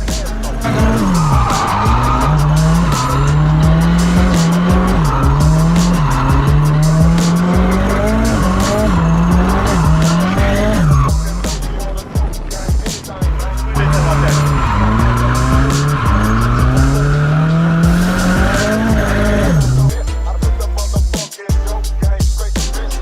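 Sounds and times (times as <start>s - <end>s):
tyres squealing: 0.0s - 19.9s
car engine revving: 0.0s - 20.0s.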